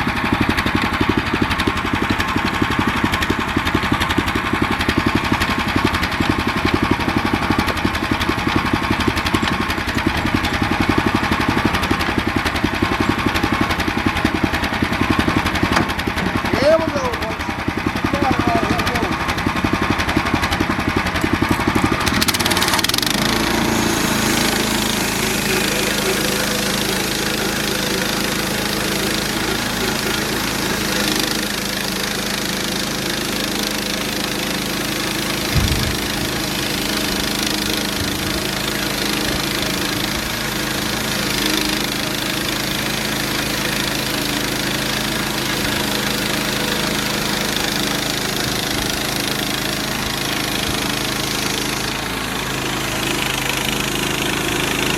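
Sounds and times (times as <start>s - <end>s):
sawmill engine running: 0.0s - 54.9s
band blade sawing wood: 2.3s - 54.9s
short thump: 35.5s - 36.4s.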